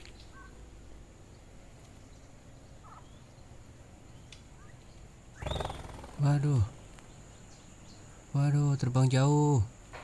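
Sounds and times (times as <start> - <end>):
steady low background noise: 0.0 - 10.0
quail calls: 5.4 - 6.4.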